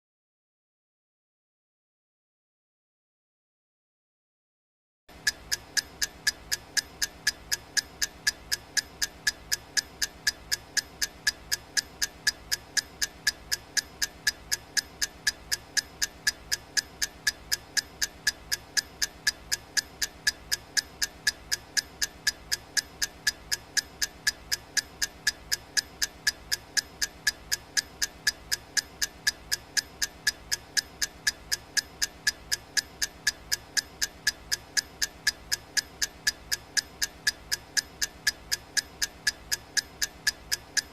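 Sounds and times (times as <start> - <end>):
clock ticking: 5.1 - 40.9.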